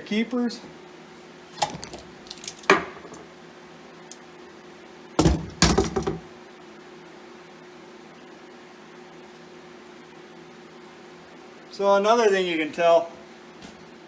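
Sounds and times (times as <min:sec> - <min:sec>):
clatter of metal knocks: 0:01.6 - 0:03.3, 0:05.2 - 0:06.3
metal valve parts clinking: 0:01.6 - 0:03.3, 0:05.2 - 0:06.3.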